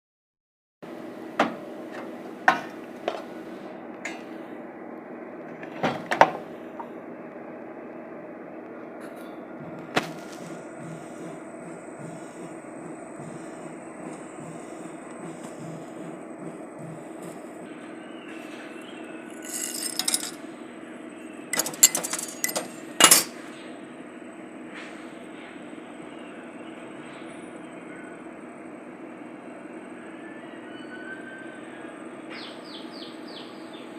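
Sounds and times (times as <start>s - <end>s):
steady hum: 6.4s - 27.0s
arc welding buzzing hiss: 9.6s - 17.7s.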